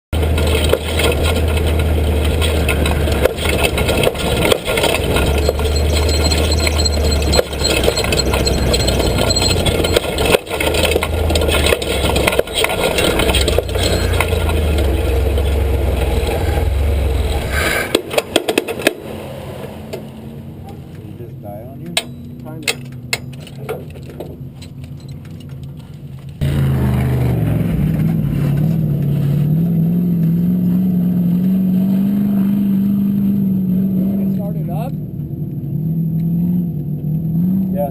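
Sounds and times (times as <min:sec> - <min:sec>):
engine running with rattling: 0:00.1 - 0:37.9
clicks: 0:00.6 - 0:14.9.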